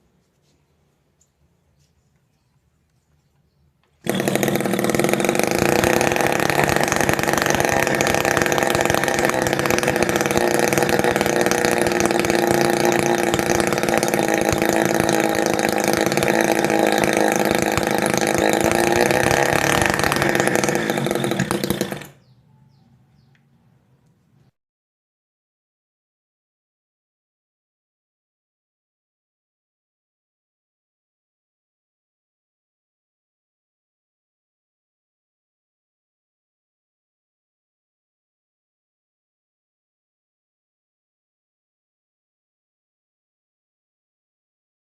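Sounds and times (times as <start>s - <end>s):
small two-stroke engine running: 3.9s - 22.4s.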